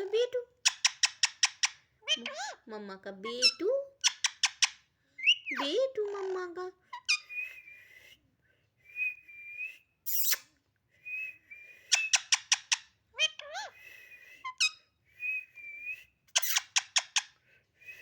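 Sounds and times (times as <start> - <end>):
parrot chirping sharply: 10.1 - 10.5, 16.3 - 17.3
parrot whistling: 11.1 - 13.6.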